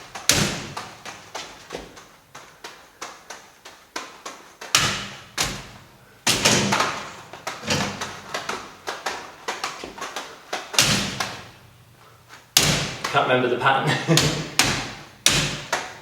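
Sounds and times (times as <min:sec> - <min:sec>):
juggling balls knocking and clicking: 0:00.0 - 0:11.7, 0:14.0 - 0:16.0
louder thuds: 0:10.7 - 0:11.6, 0:12.5 - 0:13.2.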